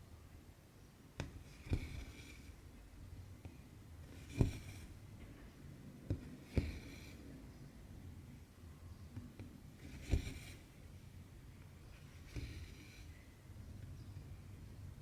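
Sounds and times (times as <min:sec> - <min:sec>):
needle poking through fabric: 0:01.2 - 0:02.6, 0:04.0 - 0:05.0, 0:06.1 - 0:07.2, 0:09.8 - 0:10.7, 0:12.2 - 0:13.0.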